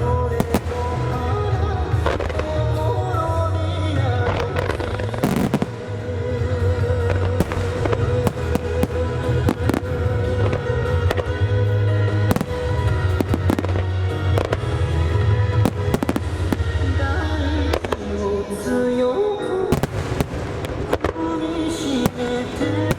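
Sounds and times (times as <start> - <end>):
firework shells bursting: 0.4 - 1.4, 4.9 - 6.2, 7.3 - 10.6, 15.6 - 17.0, 19.7 - 22.9.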